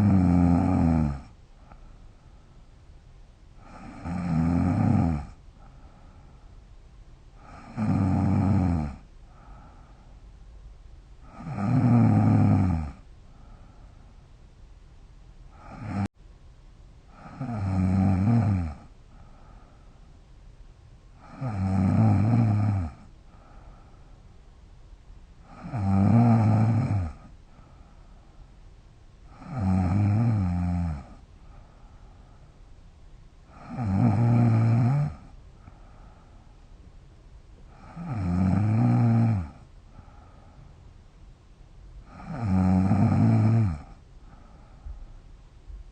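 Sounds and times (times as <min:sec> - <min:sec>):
woman snoring: 0:00.0 - 0:01.4, 0:03.6 - 0:05.4, 0:07.4 - 0:09.5, 0:11.2 - 0:13.0, 0:15.5 - 0:16.1, 0:17.1 - 0:18.9, 0:21.2 - 0:23.5, 0:25.4 - 0:27.3, 0:29.3 - 0:31.2, 0:33.4 - 0:35.4, 0:37.7 - 0:40.1, 0:42.0 - 0:44.4
soft breathing: 0:01.2 - 0:04.1, 0:05.3 - 0:07.8, 0:09.0 - 0:11.6, 0:13.0 - 0:14.6, 0:18.8 - 0:21.6, 0:22.9 - 0:25.8, 0:26.6 - 0:29.6, 0:31.0 - 0:33.8, 0:35.1 - 0:38.1, 0:39.4 - 0:42.4, 0:43.8 - 0:45.9.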